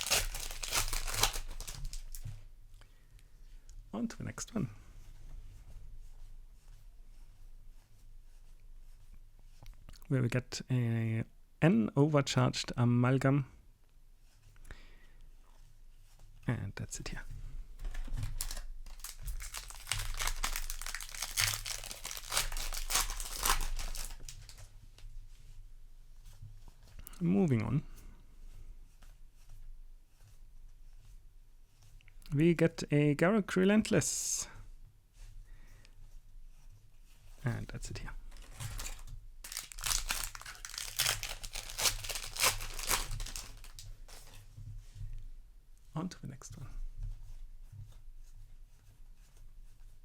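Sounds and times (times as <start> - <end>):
foil wrapper crinkling and tearing: 0.0 - 2.2, 18.2 - 24.7, 38.3 - 44.3.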